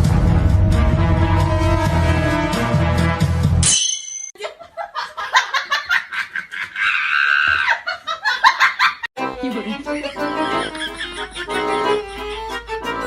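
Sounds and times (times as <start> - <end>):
dramatic background music: 0.0 - 3.6
comedic laugh sound effect: 10.2 - 12.8.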